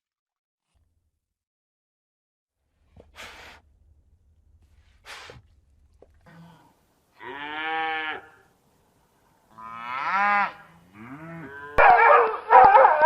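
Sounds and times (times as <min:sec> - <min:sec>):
cow mooing: 0:06.3 - 0:08.4, 0:09.5 - 0:11.9.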